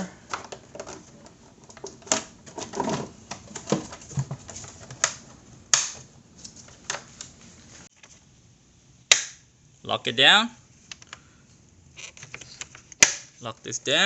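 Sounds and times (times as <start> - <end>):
sharp plastic snap: 5.0 - 6.0, 9.1 - 9.4, 12.9 - 13.3.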